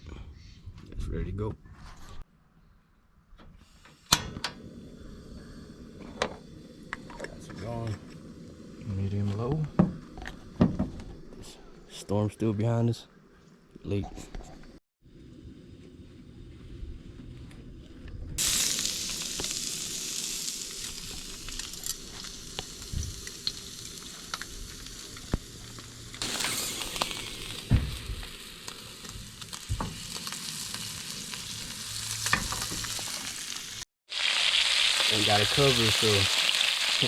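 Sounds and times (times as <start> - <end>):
fish frying with sizzle and pops: 18.4 - 37.0.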